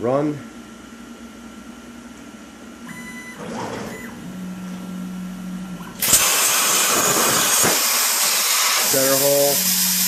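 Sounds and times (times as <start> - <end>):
brief electronic tone: 2.9 - 4.4
plasma torch hissing: 6.0 - 10.0.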